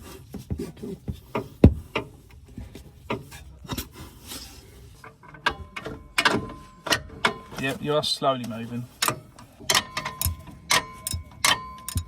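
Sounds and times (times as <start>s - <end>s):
hand tools clicking and knocking: 5.0s - 7.8s, 8.4s - 12.0s.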